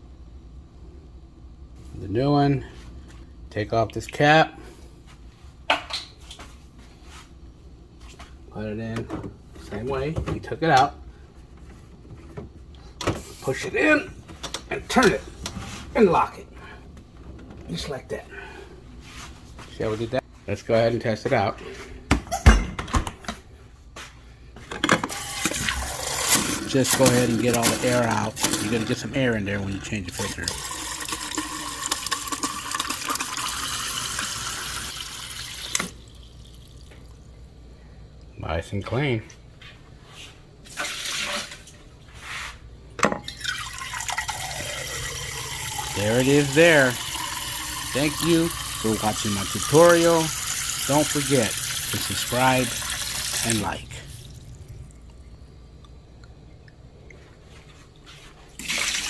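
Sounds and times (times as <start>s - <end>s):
low steady hum: 0.0s - 59.0s
water running from dispenser: 25.1s - 37.2s, 40.7s - 41.8s, 43.3s - 55.0s, 58.6s - 59.0s.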